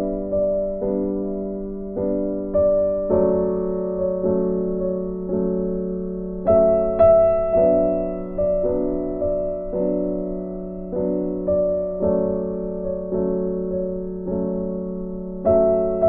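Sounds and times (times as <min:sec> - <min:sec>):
gentle piano piece: 0:00.0 - 0:16.0.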